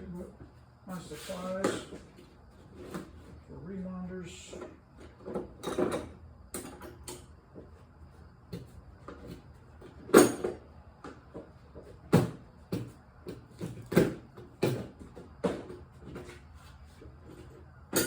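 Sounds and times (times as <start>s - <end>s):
parts knocking and clattering: 4.6s - 7.8s, 8.5s - 16.5s, 17.2s - 18.0s.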